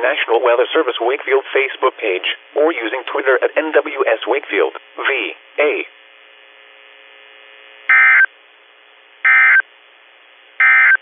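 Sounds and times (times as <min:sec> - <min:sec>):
faint radio hiss: 0:00.0 - 0:11.0
buzzy high-pitched data bursts: 0:07.9 - 0:08.3, 0:09.2 - 0:09.6, 0:10.6 - 0:11.0.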